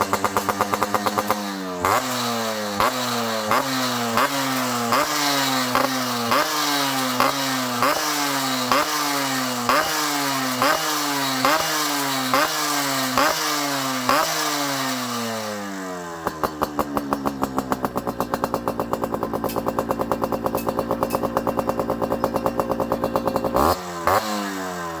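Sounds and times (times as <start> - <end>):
two-stroke engine revving: 0.0 - 25.0
engine popping idle: 16.2 - 23.7.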